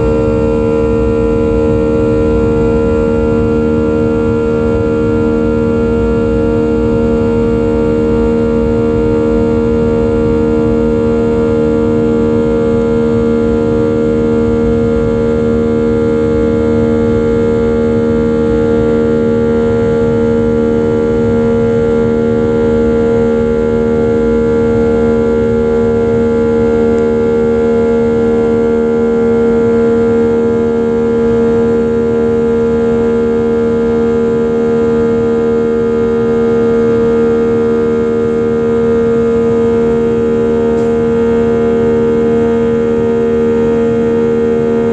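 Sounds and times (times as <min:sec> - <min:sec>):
jet engines droning: 0:00.0 - 0:44.9.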